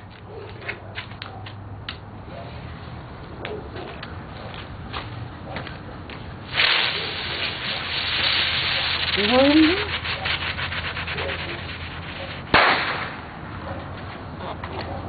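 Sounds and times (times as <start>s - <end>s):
firework sparks hissing and crackling: 6.3s - 13.5s
firework bang: 6.5s - 13.4s.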